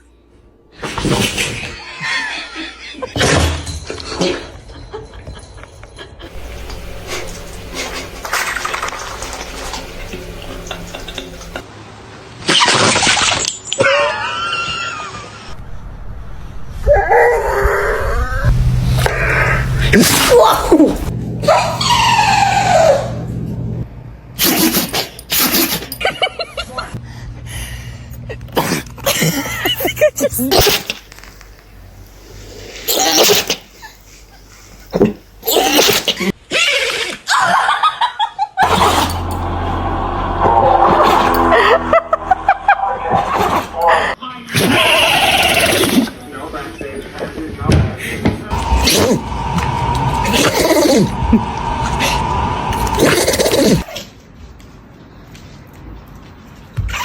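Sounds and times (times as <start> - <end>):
steady low hum: 6.3 - 11.7, 18.5 - 21.4, 38.6 - 44.2, 48.5 - 53.8
dogs sneezing: 24.4 - 26.0, 30.4 - 31.1, 32.9 - 34.0, 35.0 - 36.4.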